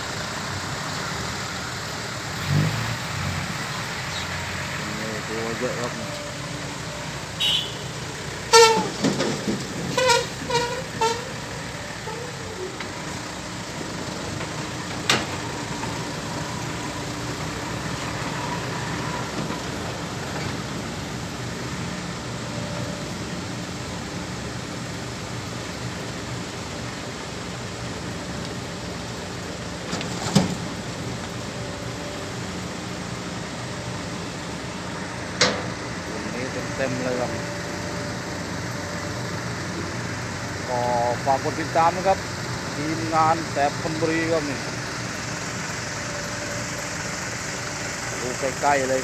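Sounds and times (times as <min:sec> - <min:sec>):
diesel machinery running: 0:00.0 - 0:49.0
vehicle horn toots: 0:07.2 - 0:12.7.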